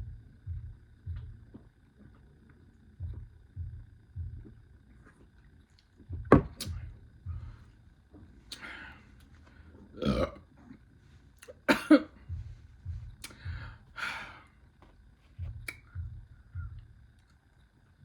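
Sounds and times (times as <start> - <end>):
person burping: 10.0 - 10.4, 11.7 - 12.1
wet mouth smacking and chewing: 15.6 - 16.0.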